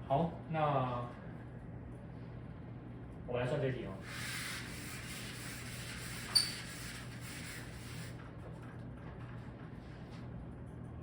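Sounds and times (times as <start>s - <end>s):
scratchy writing hiss: 4.1s - 8.3s.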